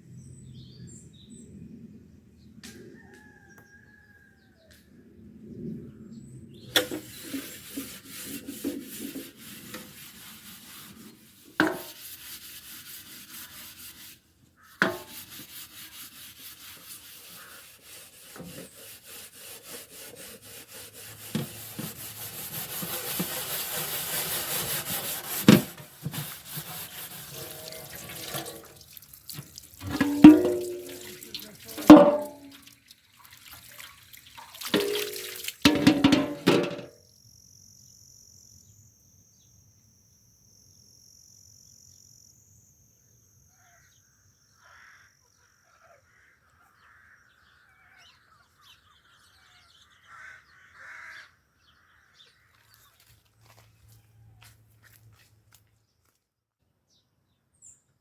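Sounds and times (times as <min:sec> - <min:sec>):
tap water running and splashing: 0:06.8 - 0:10.9, 0:19.6 - 0:36.9
kitchen things clattering: 0:27.3 - 0:28.8, 0:29.8 - 0:32.6, 0:34.7 - 0:36.9.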